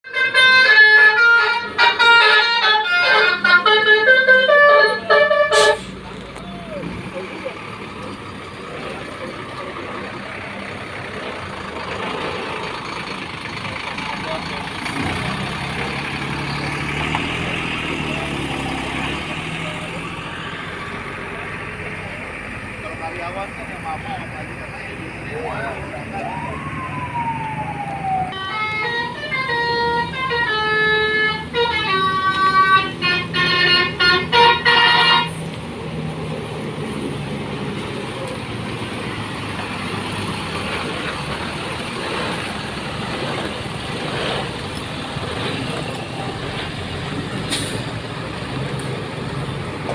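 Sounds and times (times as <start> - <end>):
musical air horn playing tune: 0.0 - 6.0, 28.3 - 35.4
bus engine running: 0.1 - 49.9.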